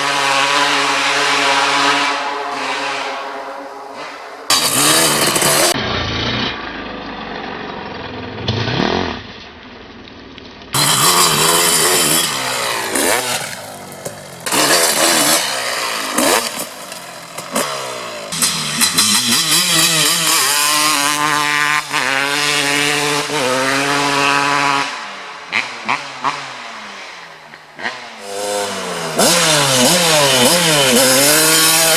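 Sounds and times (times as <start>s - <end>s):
dirt bike engine revving: 0.0s - 6.7s, 10.8s - 31.9s.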